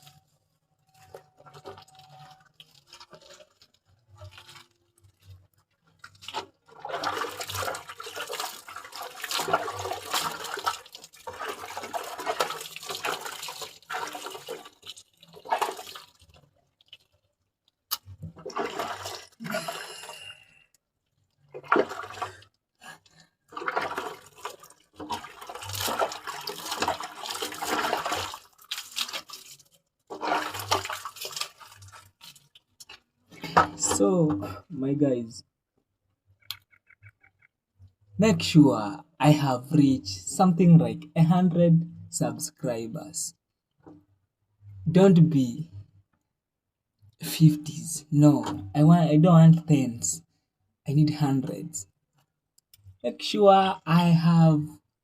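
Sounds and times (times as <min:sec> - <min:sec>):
water pouring and splashing: 0:00.0 - 0:34.2.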